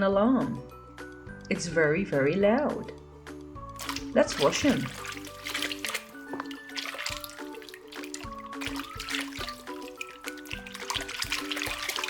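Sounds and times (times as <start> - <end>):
water dripping and trickling: 3.7 - 12.0.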